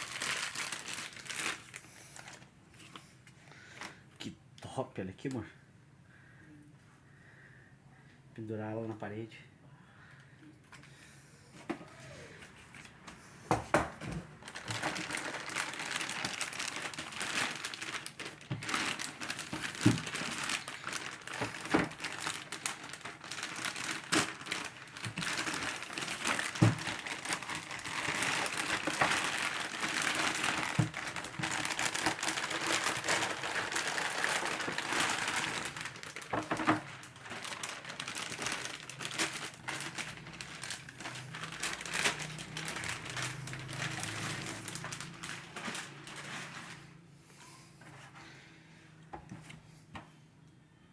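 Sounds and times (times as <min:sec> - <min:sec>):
plastic packaging crinkling: 0:00.0 - 0:02.9, 0:14.2 - 0:46.9.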